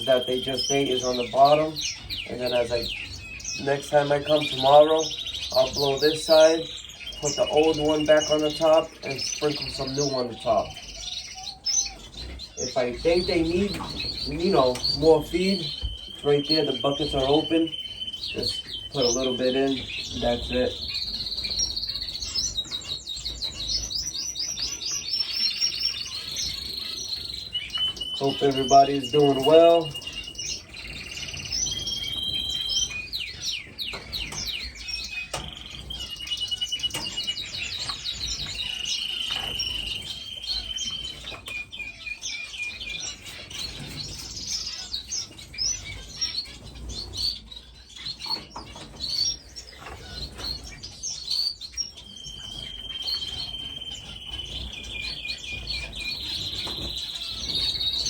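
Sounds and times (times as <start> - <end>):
finches chirping: 0.0 - 58.0
trilling bird notes: 0.0 - 58.0.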